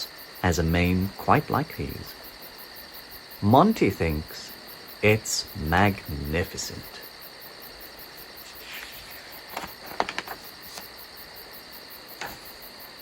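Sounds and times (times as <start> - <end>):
crickets and insects chirping: 0.0 - 13.0.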